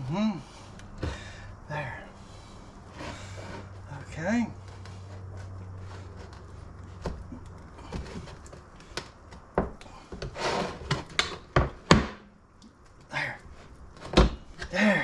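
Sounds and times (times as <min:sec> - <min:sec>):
rubber tire rubbing and scraping: 0:00.9 - 0:11.6.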